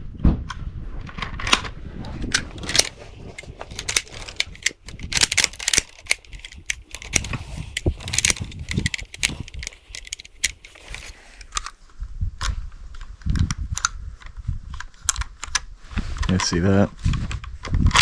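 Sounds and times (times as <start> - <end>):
rifle action clicking: 1.5 - 11.8.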